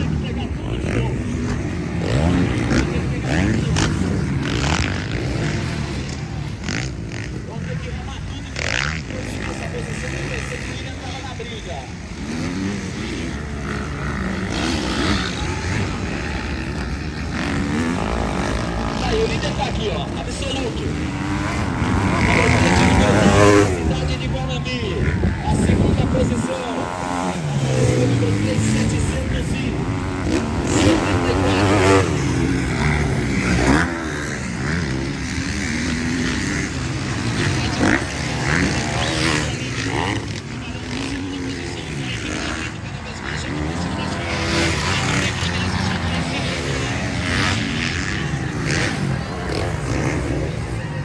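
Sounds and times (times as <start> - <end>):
motorcycle engines revving: 0.0 - 51.0.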